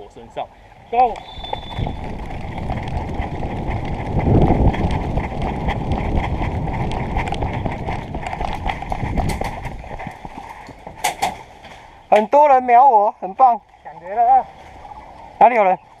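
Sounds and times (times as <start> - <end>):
steady rumble: 1.0 - 12.1
running footsteps: 1.1 - 12.1.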